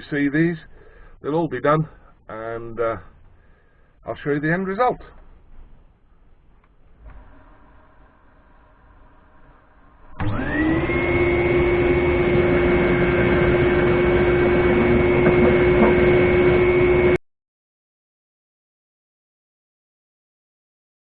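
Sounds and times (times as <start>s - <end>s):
workshop machine motor whining: 9.4s - 17.2s.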